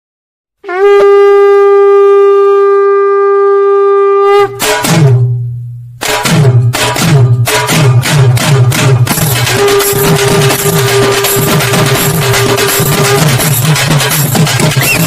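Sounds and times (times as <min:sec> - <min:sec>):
horn-like note: 0:00.6 - 0:05.3, 0:09.4 - 0:13.7
drum hits with bass boom: 0:04.6 - 0:15.0
fast beat: 0:06.0 - 0:15.0.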